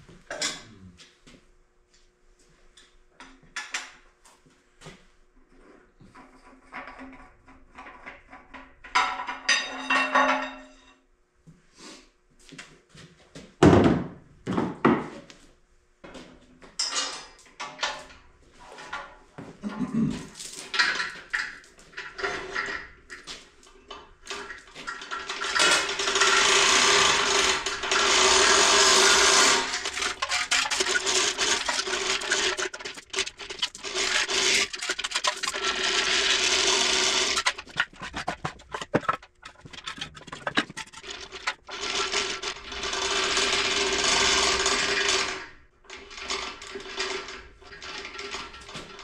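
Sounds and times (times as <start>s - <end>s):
clicks and clanks: 16.7s - 18.2s, 20.2s - 43.7s
small motorized tool whining: 25.1s - 45.4s.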